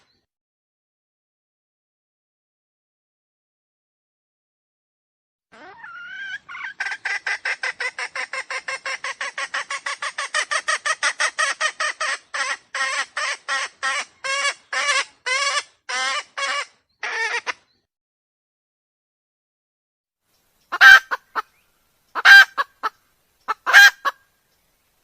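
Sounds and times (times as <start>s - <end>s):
junglefowl clucking calls: 5.6s - 17.6s, 20.7s - 24.2s.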